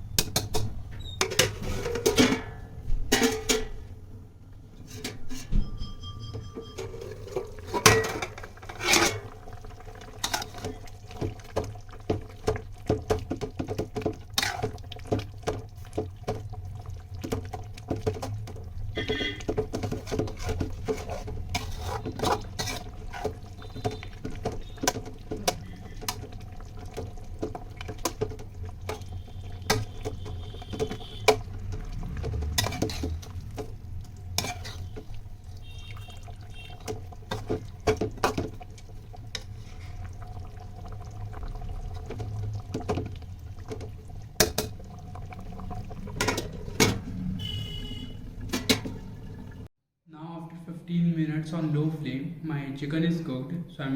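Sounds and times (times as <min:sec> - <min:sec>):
metal spatula scraping a pot: 0:00.4 - 0:02.6, 0:04.8 - 0:11.6, 0:13.7 - 0:15.0, 0:18.0 - 0:27.1, 0:27.8 - 0:38.5, 0:39.3 - 0:40.1, 0:46.0 - 0:49.0.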